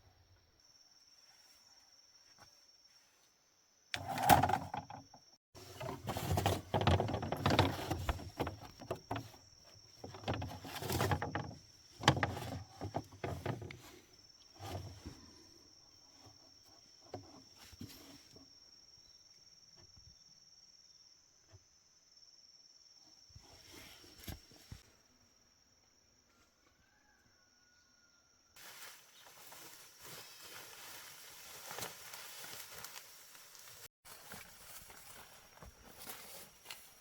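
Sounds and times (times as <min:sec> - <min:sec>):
rustling and knocking of handling: 0:04.0 - 0:15.3.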